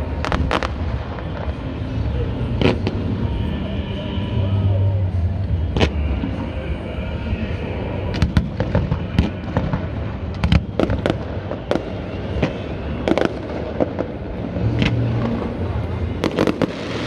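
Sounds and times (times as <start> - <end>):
fireworks bursting: 0.0 - 3.5, 8.0 - 17.0
low background rumble: 0.0 - 17.0.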